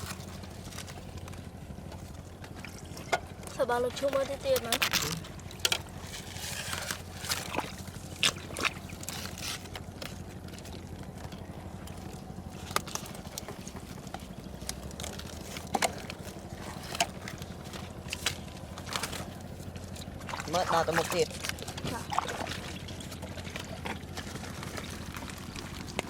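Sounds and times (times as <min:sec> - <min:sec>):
small water splashes: 0:00.0 - 0:26.0
steady low hum: 0:00.0 - 0:26.0
water sloshing and trickling: 0:00.0 - 0:26.0.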